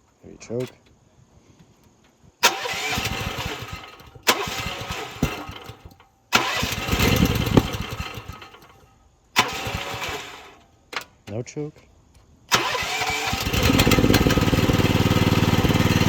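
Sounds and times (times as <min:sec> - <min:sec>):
small gasoline engine starting: 0:02.4 - 0:11.1, 0:12.5 - 0:16.0.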